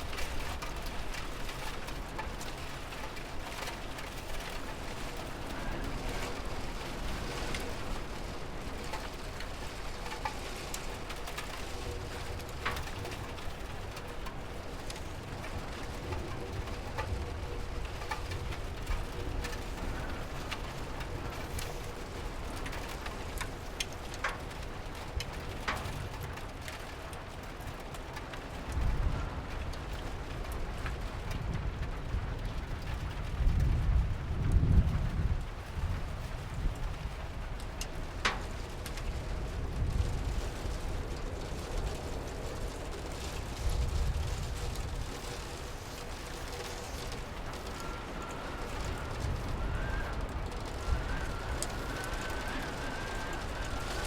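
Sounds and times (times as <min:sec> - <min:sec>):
steady rain: 0:00.0 - 0:54.0
raindrops tapping sharply: 0:36.5 - 0:54.0.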